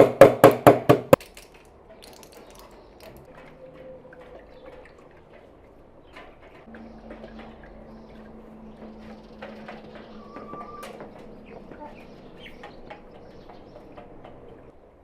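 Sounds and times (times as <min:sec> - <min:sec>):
hard knocks: 0:00.0 - 0:01.2
water trickling: 0:02.0 - 0:14.8.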